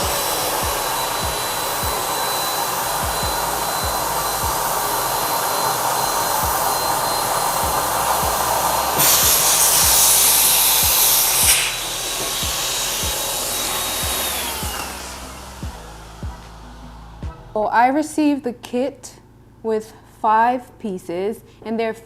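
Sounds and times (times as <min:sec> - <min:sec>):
electric air pump whining: 0:00.0 - 0:17.6.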